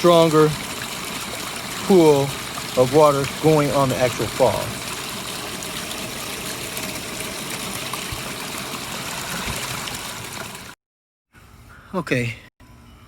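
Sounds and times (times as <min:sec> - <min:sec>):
waterfall splashing over rocks: 0:00.0 - 0:10.8.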